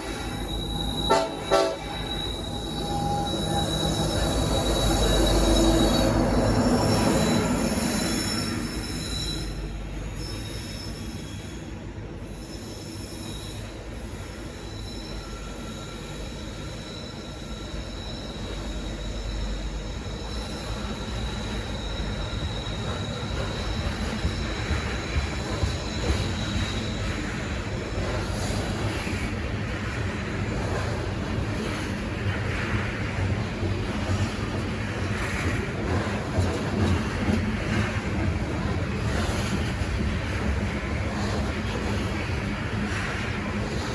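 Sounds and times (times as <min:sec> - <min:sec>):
high wheel squeal: 0:00.0 - 0:28.5
train rolling past: 0:00.0 - 0:43.9
train horn blasts: 0:00.9 - 0:03.6.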